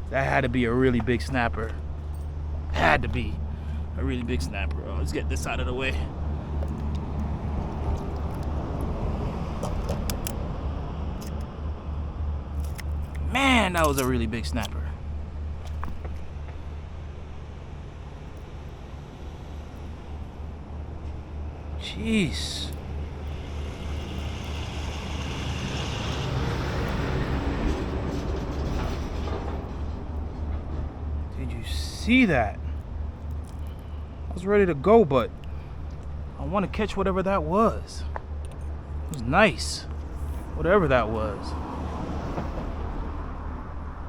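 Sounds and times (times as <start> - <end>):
low outdoor rumble: 0.0 - 44.0.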